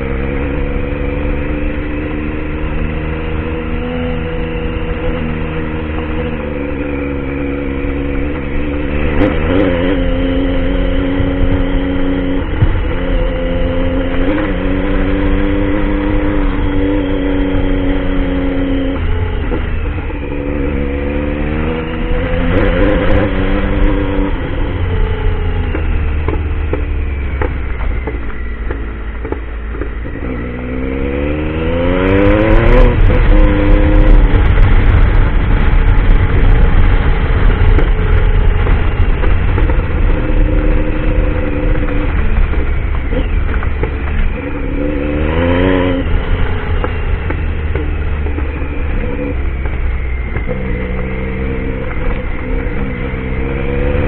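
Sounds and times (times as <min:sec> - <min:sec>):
motorcycle engine revving: 0:00.0 - 0:54.0
wind rumble on microphone: 0:00.0 - 0:54.0.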